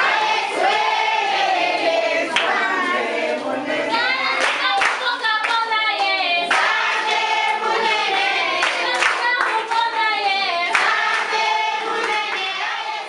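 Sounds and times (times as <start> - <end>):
group of voices singing: 0.0 - 13.0
hand clapping: 2.3 - 2.5, 4.4 - 7.2, 8.6 - 11.4, 12.0 - 12.5.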